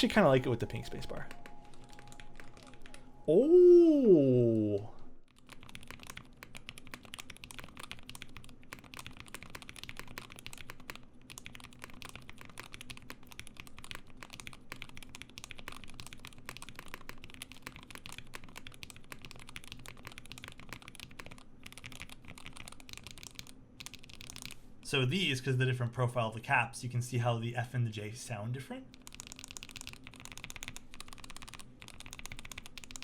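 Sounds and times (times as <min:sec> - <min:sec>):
mechanical keyboard typing: 0:00.0 - 0:03.0, 0:05.3 - 0:24.6, 0:28.9 - 0:33.0.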